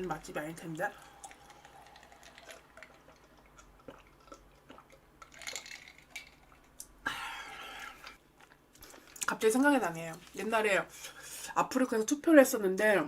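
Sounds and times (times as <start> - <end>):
close chewing with mouth clicks: 0.9 - 7.0, 7.8 - 9.3.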